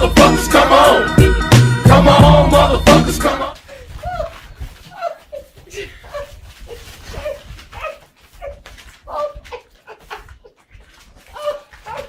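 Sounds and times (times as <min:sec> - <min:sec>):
dog whining and yipping: 0:07.1 - 0:09.4.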